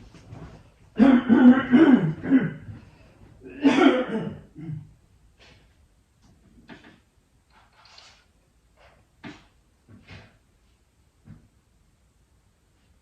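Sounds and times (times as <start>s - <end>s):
man coughing: 1.0s - 2.8s, 3.4s - 5.0s.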